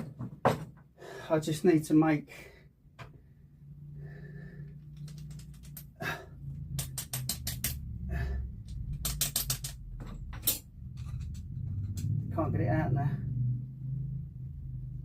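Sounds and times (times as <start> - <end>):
metallic clicks and taps: 4.8 - 5.9, 6.6 - 7.9, 8.7 - 12.2.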